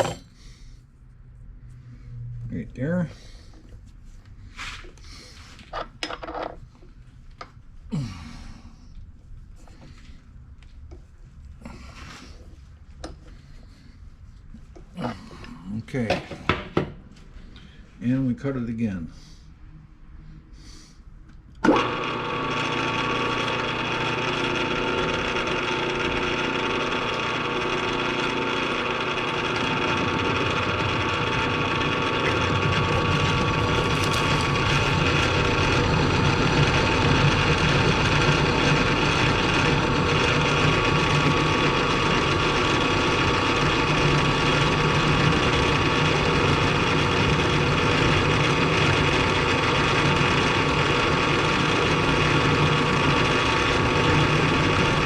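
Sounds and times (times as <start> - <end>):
milling machine cutting metal: 27.0 - 42.0.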